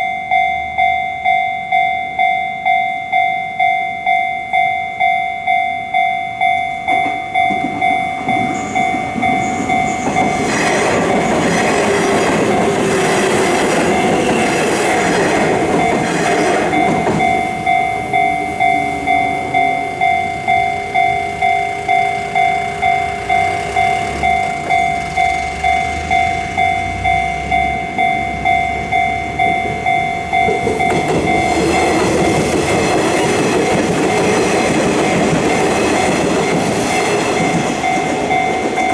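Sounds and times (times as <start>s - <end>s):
level crossing warning bell: 0.0s - 38.9s
train wheels clattering over rails: 6.9s - 20.1s, 28.4s - 38.9s.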